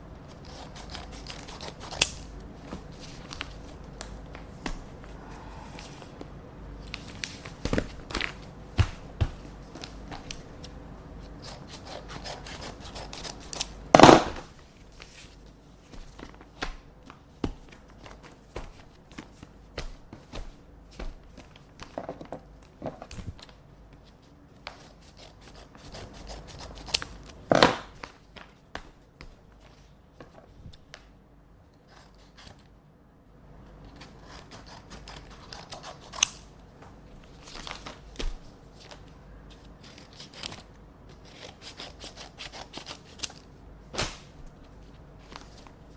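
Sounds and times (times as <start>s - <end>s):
scissors cutting paper: 0.3s - 2.3s, 9.8s - 14.2s, 24.7s - 27.4s, 33.9s - 36.4s, 39.8s - 43.5s
paper rustling: 6.8s - 10.8s, 44.0s - 45.9s.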